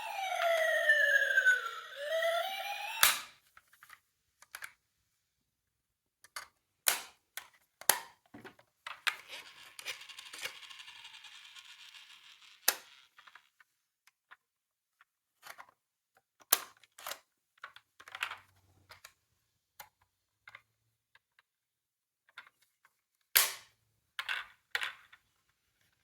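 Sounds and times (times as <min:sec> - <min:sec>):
toy electronic siren wailing: 0:00.0 - 0:03.3, 0:09.8 - 0:11.5.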